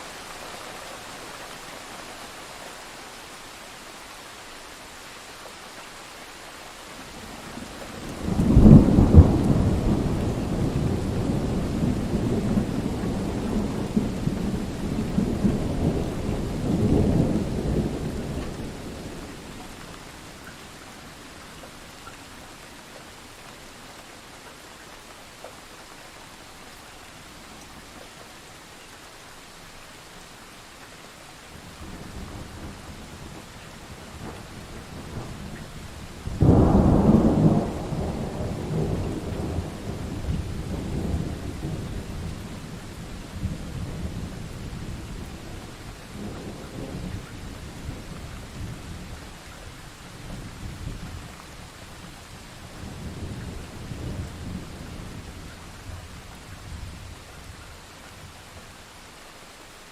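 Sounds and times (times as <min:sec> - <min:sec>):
steady rain: 0:00.0 - 0:59.9
thunderclap and rumbling thunder: 0:07.9 - 0:19.6, 0:31.8 - 0:49.3, 0:52.8 - 0:57.2.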